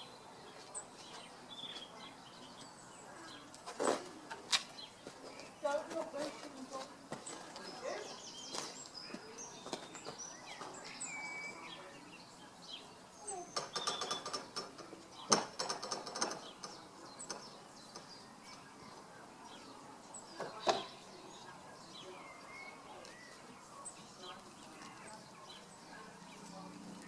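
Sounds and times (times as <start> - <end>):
birds chirping and whistling: 7.7 - 15.4.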